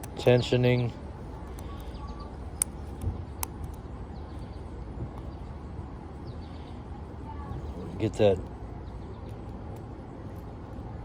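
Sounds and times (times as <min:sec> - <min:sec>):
outdoor background noise: 0:00.0 - 0:11.0
faint bird chirps: 0:01.6 - 0:02.4.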